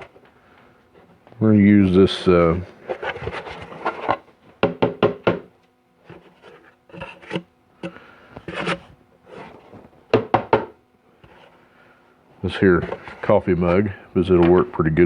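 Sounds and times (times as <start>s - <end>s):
rubbing and scraping: 2.4s - 4.2s, 6.0s - 9.8s, 12.5s - 13.8s
hard objects knocking: 4.6s - 5.5s, 10.1s - 10.8s.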